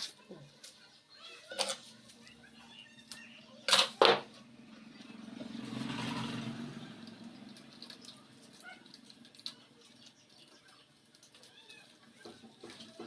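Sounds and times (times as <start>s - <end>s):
motor vehicle passing: 4.2s - 9.9s.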